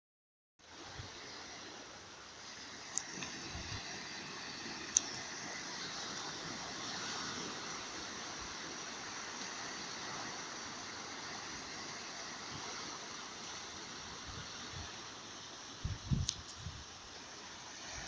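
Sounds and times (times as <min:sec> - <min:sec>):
waves breaking on a beach: 0:00.6 - 0:18.0.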